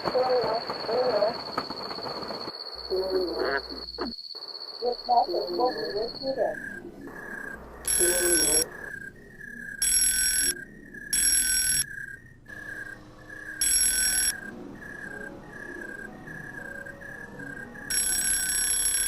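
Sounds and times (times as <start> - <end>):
electronic beeps: 2.6 - 19.0
bell-like ringing: 7.9 - 8.6.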